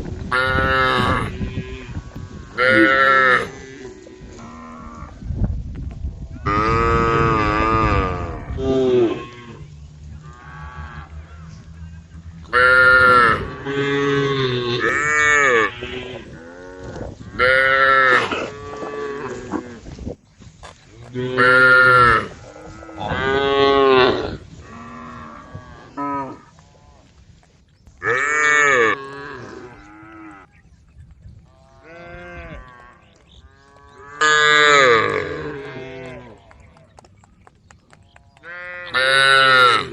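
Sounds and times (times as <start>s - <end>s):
cattle mooing: 6.4s - 9.6s, 10.2s - 19.8s, 31.6s - 36.7s.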